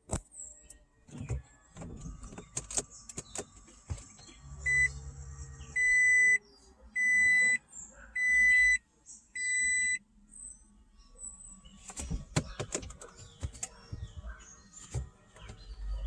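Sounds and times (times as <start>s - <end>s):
electronic warning beeps: 4.6s - 6.4s, 7.0s - 7.6s, 8.2s - 8.8s, 9.4s - 10.0s.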